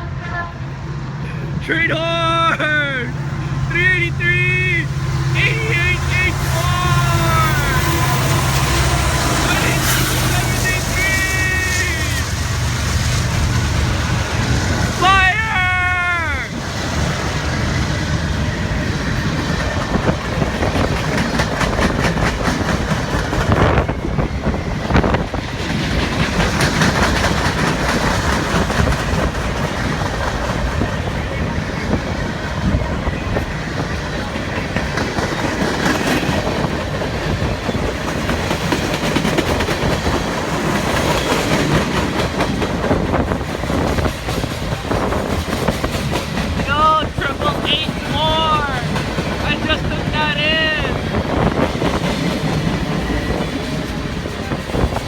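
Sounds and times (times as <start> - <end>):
freight train rumble: 0.0 - 55.0
wheels clacking over rail joints: 16.6 - 55.0.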